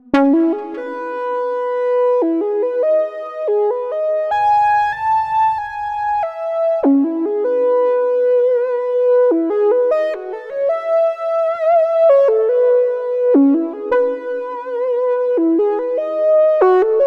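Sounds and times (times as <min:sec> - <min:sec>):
synthesizer melody: 0:00.2 - 0:06.8.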